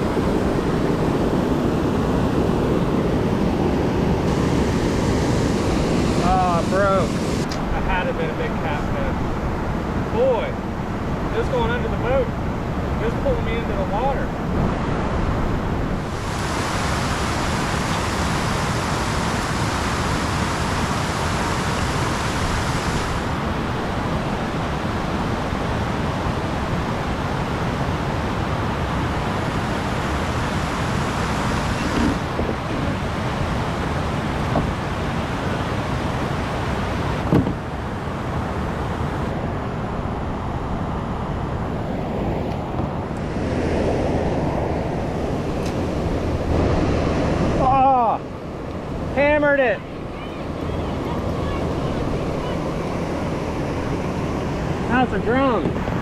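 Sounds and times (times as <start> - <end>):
water rushing over dam: 4.2 - 14.4, 15.3 - 39.8.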